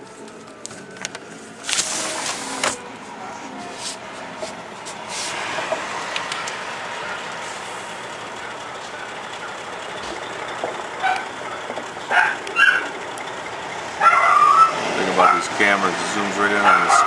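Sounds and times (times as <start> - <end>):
vehicle and machinery noise: 0.0 - 17.0
dog yipping: 11.0 - 11.3, 12.1 - 13.0, 14.0 - 15.4, 16.6 - 17.0.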